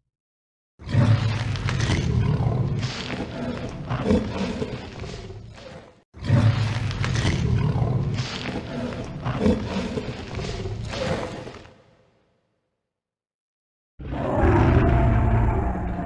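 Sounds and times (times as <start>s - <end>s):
dinosaur roar: 0.8s - 11.6s, 14.0s - 16.0s.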